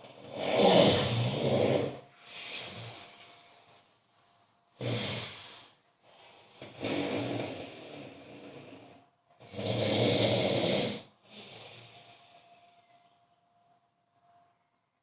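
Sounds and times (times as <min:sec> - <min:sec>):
man snoring loudly: 0:00.0 - 0:02.0, 0:04.8 - 0:05.6, 0:06.6 - 0:11.9.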